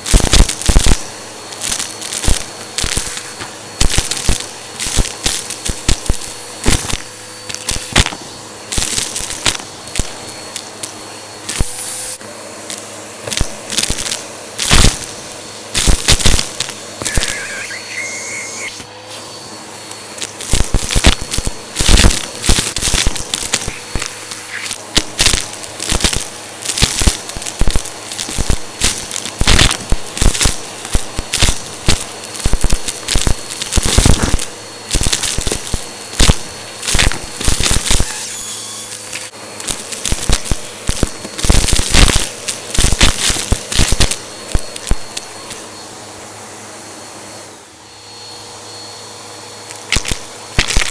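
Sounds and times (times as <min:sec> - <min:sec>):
vacuum cleaner motor: 0:00.0 - 0:50.9.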